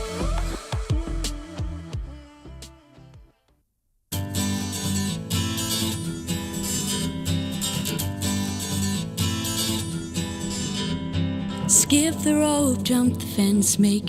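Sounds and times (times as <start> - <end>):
strummed acoustic guitar music: 4.1 - 14.0.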